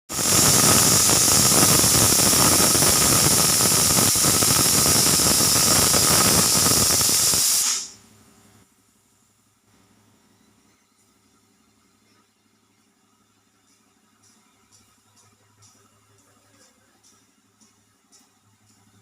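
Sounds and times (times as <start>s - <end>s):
pressure cooker whistle hissing: 0.1s - 8.0s.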